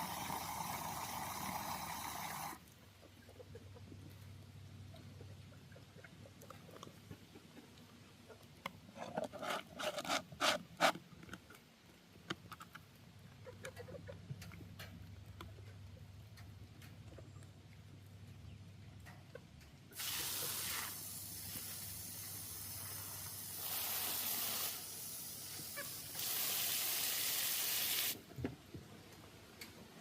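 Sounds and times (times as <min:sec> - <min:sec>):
water spraying under pressure: 0:00.0 - 0:02.6, 0:20.0 - 0:28.2.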